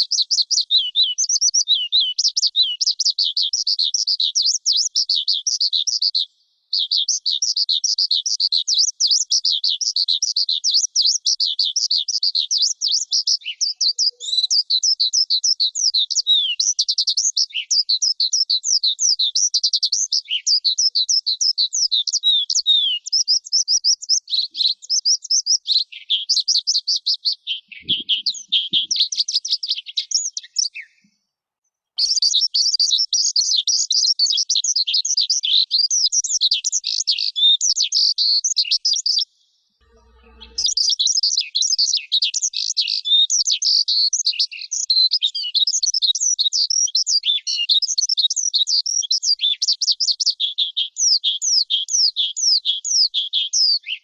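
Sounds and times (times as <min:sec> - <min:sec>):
lark singing: 0:06.8 - 0:31.0, 0:39.8 - 0:49.7.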